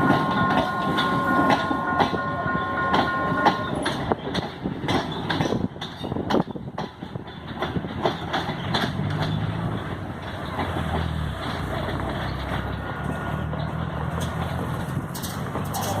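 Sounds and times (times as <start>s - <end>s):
train motor hum: 0.0s - 16.0s
train wheel clicks: 2.8s - 16.0s.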